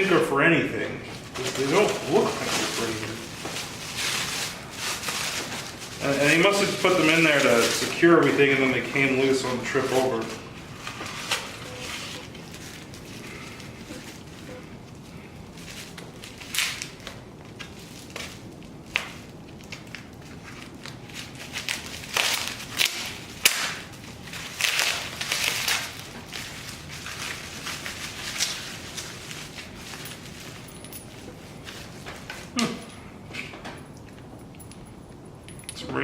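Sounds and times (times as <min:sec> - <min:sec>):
parts scraping and rustling: 0:01.1 - 0:19.2.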